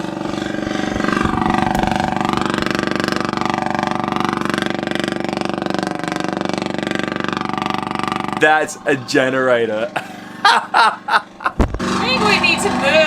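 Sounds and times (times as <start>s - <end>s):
generator running: 0.0s - 13.0s.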